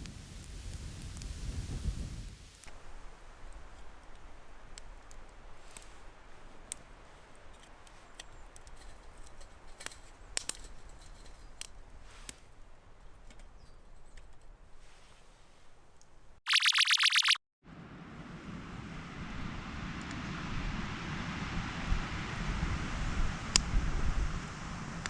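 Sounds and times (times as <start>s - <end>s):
wood fire crackling: 0.0s - 2.7s
faint fire hiss: 0.0s - 6.1s.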